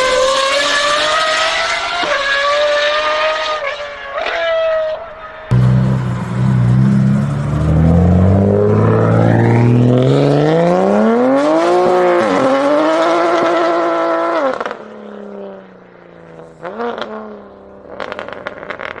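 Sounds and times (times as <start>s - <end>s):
exhaust crackling: 5.5s - 10.8s
car engine accelerating hard: 5.5s - 14.8s.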